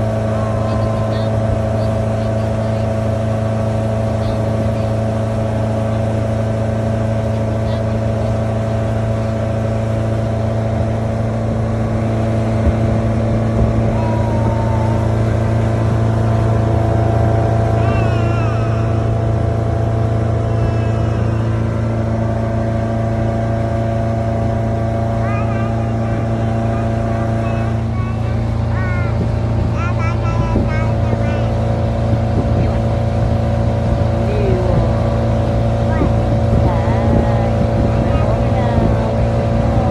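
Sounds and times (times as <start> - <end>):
boat motor running: 0.0 - 39.9.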